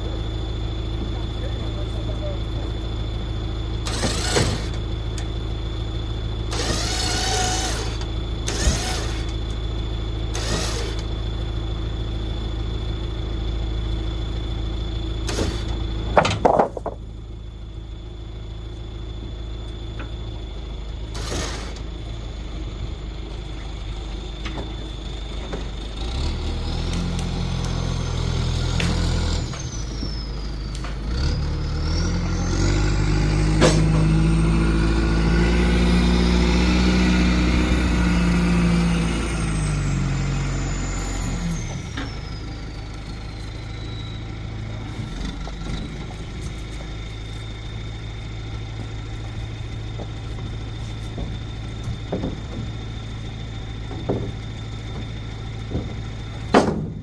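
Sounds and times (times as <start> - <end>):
engine whine: 0.0 - 57.0
truck engine running: 0.0 - 57.0
clunk: 3.8 - 5.3, 15.2 - 17.1, 33.5 - 34.1, 49.7 - 57.0
engine knocks: 15.2 - 17.3, 44.6 - 57.0.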